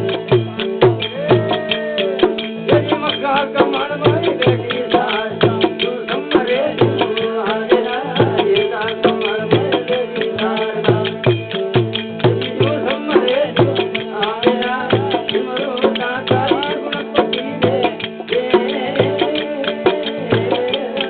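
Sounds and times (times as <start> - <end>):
hand drum beat: 0.0 - 21.0.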